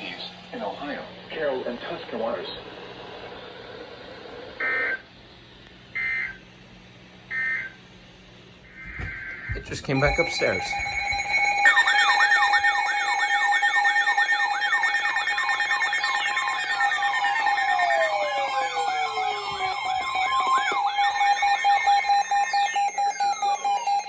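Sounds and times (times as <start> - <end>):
warbling alarm: 4.6 - 5.1, 8.7 - 24.0
falling alarm sweeps: 8.7 - 24.0
steady alarm tone: 8.7 - 24.0.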